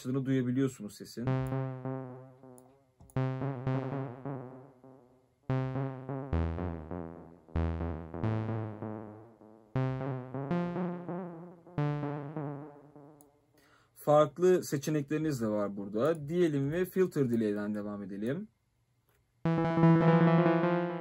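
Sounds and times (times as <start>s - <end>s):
synthesizer notes with wavering echo: 1.2s - 13.4s, 19.5s - 21.0s.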